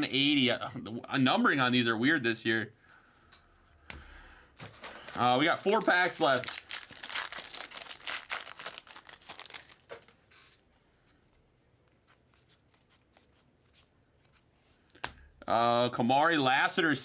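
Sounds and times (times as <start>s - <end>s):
plastic wrapper crinkling and tearing: 4.6s - 10.2s.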